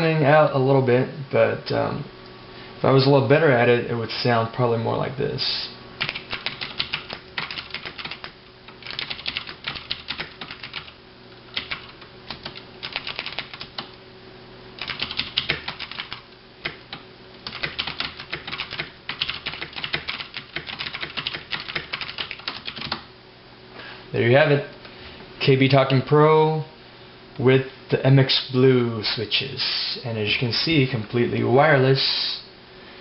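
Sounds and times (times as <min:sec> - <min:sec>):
clicky mechanical keyboard typing: 0:06.0 - 0:10.9, 0:11.5 - 0:14.0, 0:14.8 - 0:23.0.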